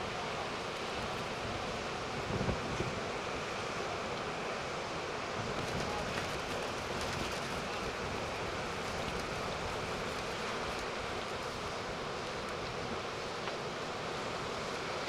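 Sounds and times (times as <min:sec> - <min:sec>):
wind noise on microphone: 0:01.4 - 0:03.2
breaking surf: 0:05.2 - 0:15.0.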